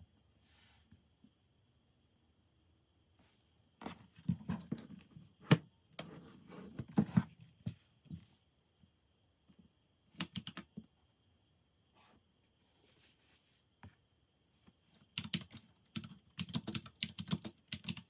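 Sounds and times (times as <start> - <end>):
mechanical keyboard keys clacking: 10.2 - 10.7, 15.2 - 18.0.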